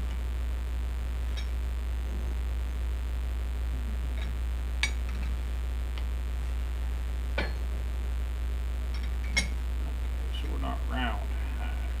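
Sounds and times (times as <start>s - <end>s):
steady low hum: 0.0s - 12.0s
metallic clinks and taps: 8.9s - 9.6s.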